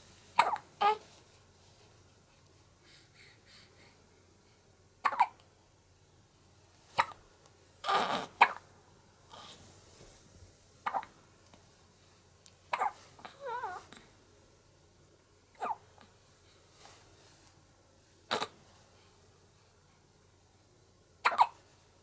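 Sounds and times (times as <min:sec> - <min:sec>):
baby hiccuping: 0:00.4 - 0:01.0, 0:05.0 - 0:05.4, 0:07.0 - 0:07.2, 0:07.8 - 0:08.6, 0:10.8 - 0:11.1, 0:12.7 - 0:13.0, 0:18.3 - 0:18.5, 0:21.2 - 0:21.6
baby whimpering: 0:07.8 - 0:08.6, 0:12.8 - 0:13.9.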